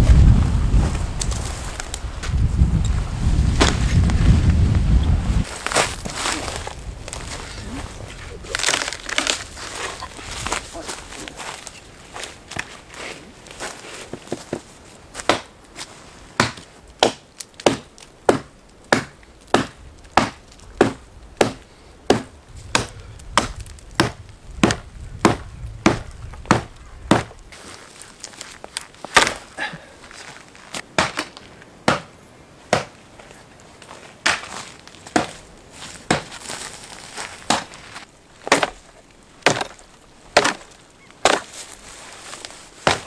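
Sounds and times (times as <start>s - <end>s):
wood being chopped: 3.6s - 3.9s, 14.1s - 15.5s, 16.4s - 27.4s, 29.1s - 29.6s, 31.0s - 33.0s, 34.2s - 35.4s, 36.0s - 36.5s, 37.4s - 41.7s, 42.4s - 43.0s.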